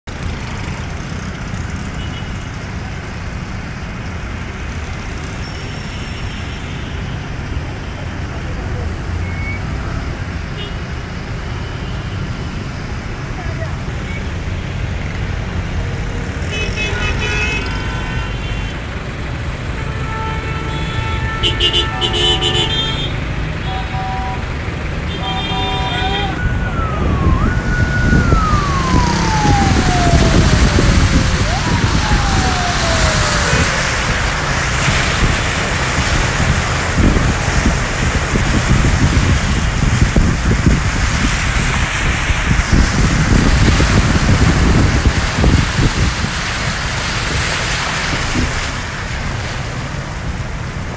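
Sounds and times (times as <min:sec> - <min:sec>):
road traffic rumble: 0:00.0 - 0:50.9
steady rain: 0:17.4 - 0:50.9
vehicle horn honking: 0:19.8 - 0:24.4, 0:25.1 - 0:26.4
siren wailing: 0:25.2 - 0:35.2
wind buffeting microphone: 0:25.6 - 0:48.8.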